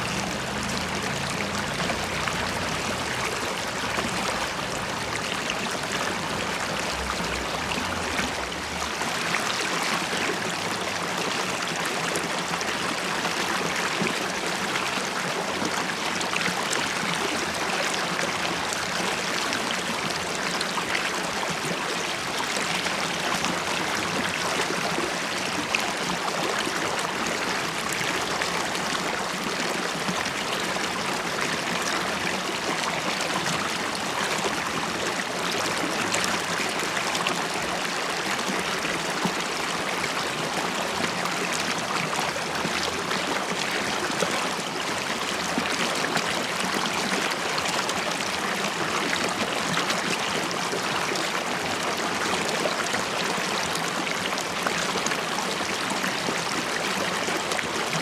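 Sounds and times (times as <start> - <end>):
small water splashes: 0.0 - 11.1
river water babbling over rocks: 0.0 - 58.0.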